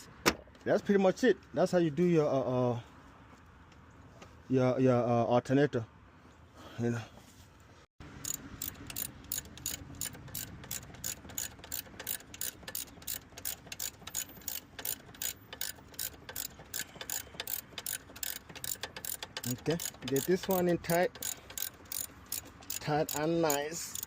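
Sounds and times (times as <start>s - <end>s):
ratchet wrench clicking: 8.2s - 24.0s.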